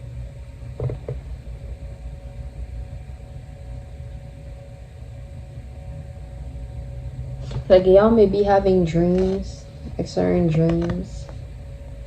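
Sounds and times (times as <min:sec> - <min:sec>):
faint hum: 0:00.0 - 0:12.0
low background rumble: 0:00.0 - 0:12.0
soft knocks: 0:00.8 - 0:01.2.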